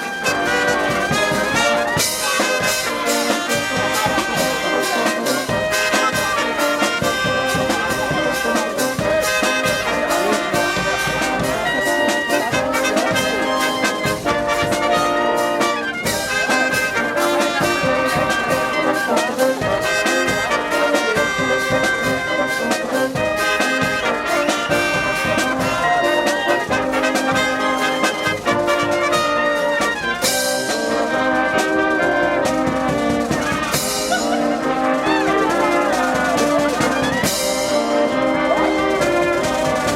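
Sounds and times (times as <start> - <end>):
brass band playing: 0.0 - 39.9.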